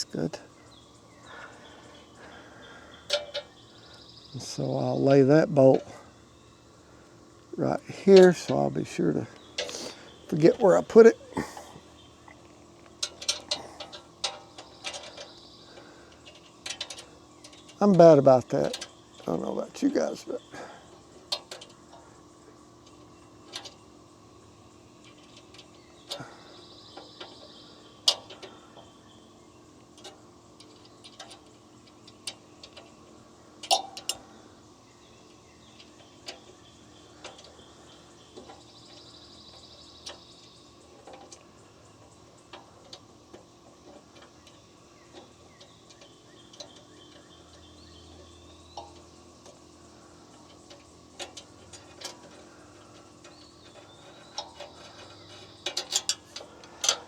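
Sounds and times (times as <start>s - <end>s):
steady low hum: 0.0s - 57.0s
metal parts and tools clicking: 50.4s - 57.0s.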